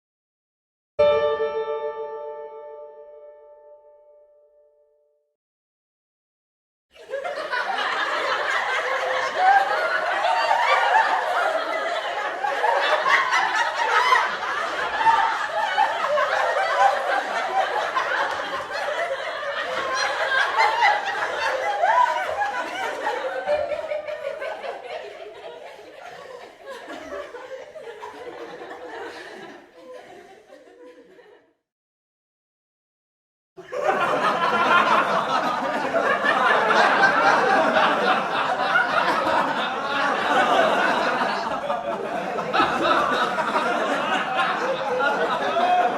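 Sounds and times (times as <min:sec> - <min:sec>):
group of people laughing: 0:07.0 - 0:31.6, 0:33.6 - 0:45.9.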